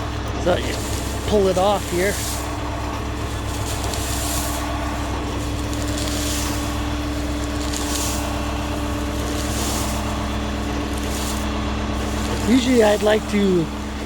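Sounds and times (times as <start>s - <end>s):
crop rustling: 0.0s - 14.0s
engine running: 0.0s - 14.0s.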